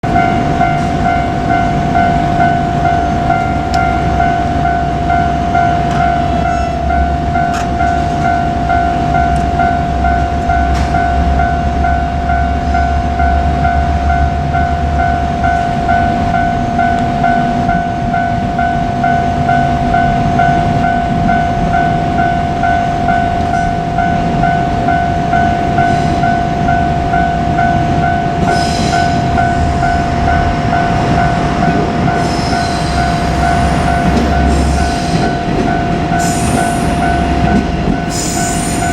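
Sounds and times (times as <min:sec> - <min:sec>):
diesel railcar rumble: 0:00.0 - 0:38.9
level crossing bell ringing: 0:00.0 - 0:38.9
high-pitched squeals: 0:25.3 - 0:38.9.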